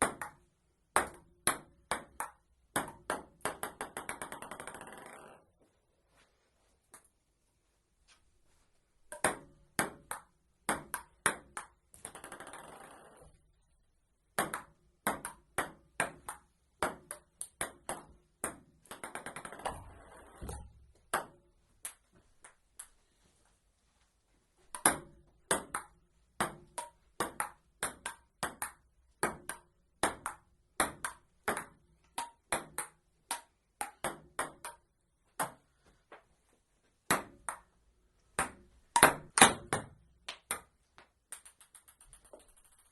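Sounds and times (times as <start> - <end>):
table tennis ball clicking off paddles: 1.0 - 5.4, 9.1 - 13.2, 38.4 - 42.9.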